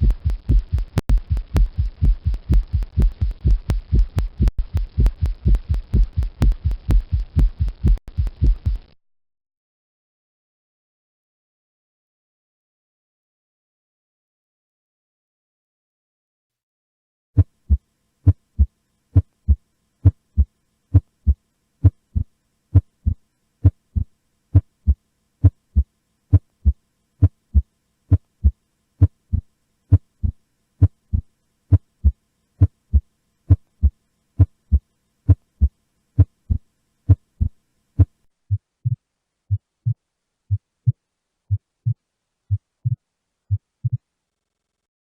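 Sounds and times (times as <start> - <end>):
heartbeat through stethoscope: 0.0 - 9.0, 17.6 - 24.7, 35.3 - 44.0.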